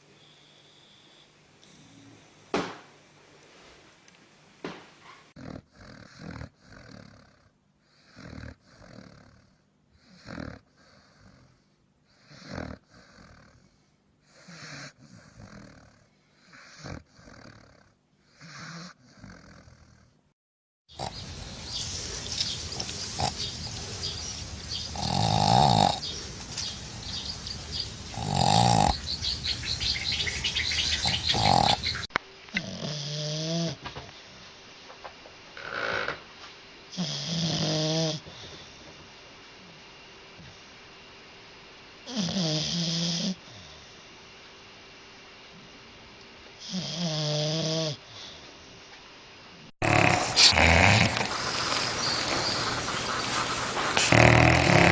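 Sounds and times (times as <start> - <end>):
dog snoring: 5.4 - 20.2, 20.9 - 21.3, 22.0 - 33.8, 35.6 - 36.2, 36.9 - 38.6, 42.1 - 43.8, 46.6 - 48.4, 49.8 - 54.9
steady background noise: 20.9 - 32.6, 48.0 - 54.9.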